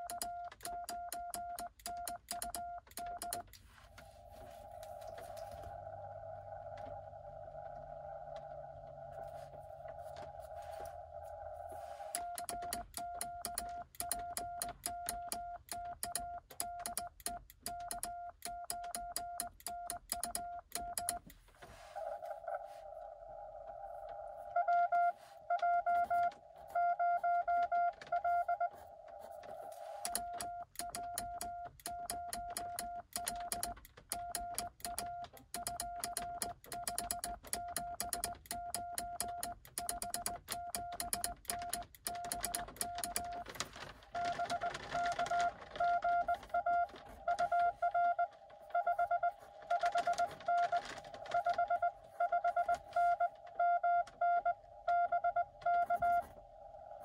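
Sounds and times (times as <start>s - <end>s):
morse key contacts clicking: 0.0s - 3.7s, 12.2s - 21.4s, 30.0s - 43.7s
sidetone beeping: 0.0s - 16.9s, 21.9s - 37.9s, 44.2s - 57.0s
morse code beeping: 0.0s - 21.3s, 23.8s - 43.6s, 44.2s - 57.0s.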